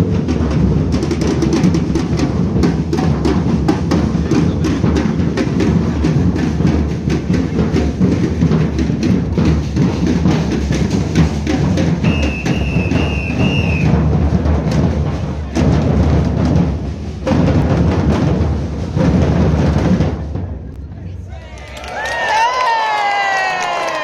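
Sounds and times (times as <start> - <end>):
marching drums beating: 0.0 - 21.2
high whistle-like tone: 12.0 - 14.0.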